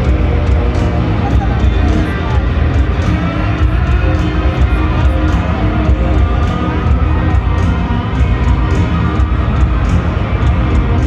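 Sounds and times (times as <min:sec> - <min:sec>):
hard rock band playing live: 0:00.0 - 0:11.0.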